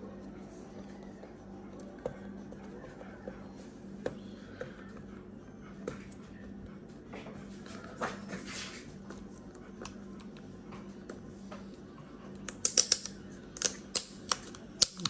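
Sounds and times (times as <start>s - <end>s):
hands clicking and rustling tape: 12.5s - 15.0s.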